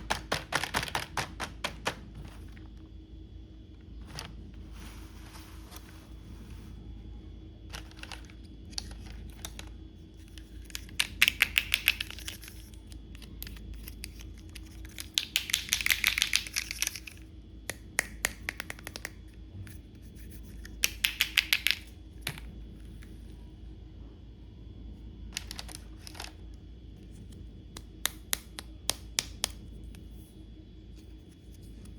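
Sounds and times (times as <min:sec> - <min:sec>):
plastic clicking and rattling: 0:00.1 - 0:02.0, 0:25.3 - 0:26.4.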